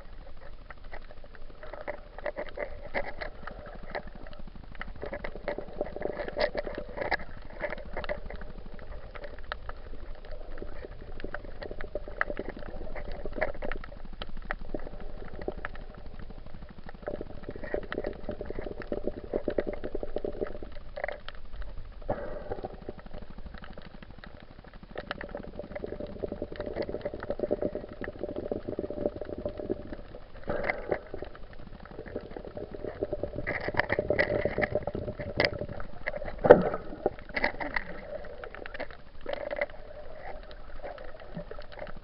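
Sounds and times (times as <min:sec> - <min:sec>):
crackling: 0:00.0 - 0:42.0
underwater bubbling: 0:00.0 - 0:42.0.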